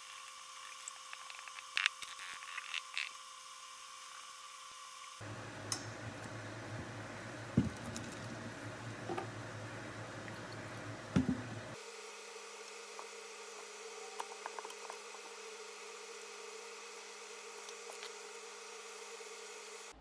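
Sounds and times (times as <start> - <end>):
steady low hum: 5.2 - 11.8.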